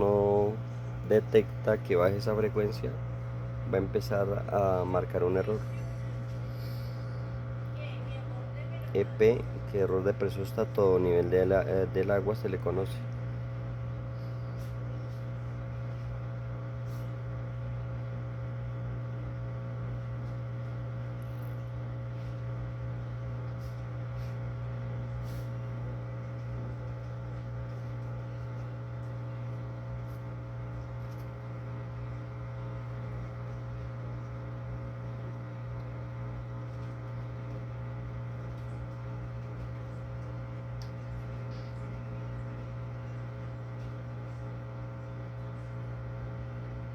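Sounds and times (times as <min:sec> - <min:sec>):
washing machine humming: 0:00.0 - 0:46.9.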